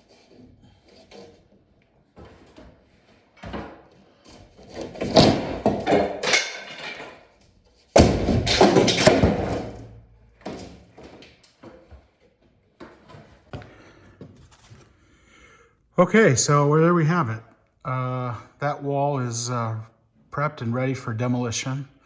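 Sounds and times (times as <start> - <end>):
wooden boards clattering: 2.1 - 13.8.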